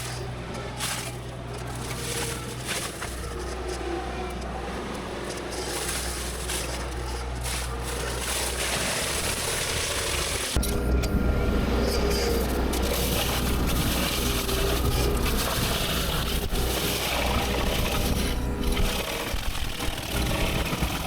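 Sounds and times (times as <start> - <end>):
brush and wood snapping: 0.0 - 4.4, 5.2 - 10.2
diesel engine running: 0.0 - 21.0.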